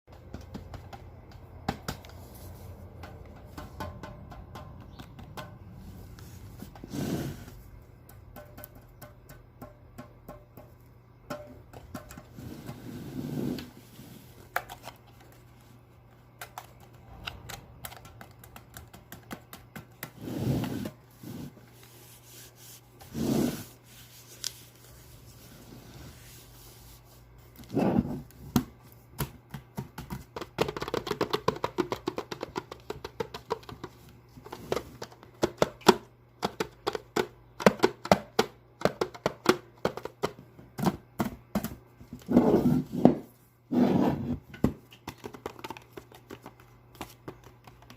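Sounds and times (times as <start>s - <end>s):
fingers tapping metal can: 2.9s - 5.7s, 8.0s - 12.3s, 29.2s - 40.9s.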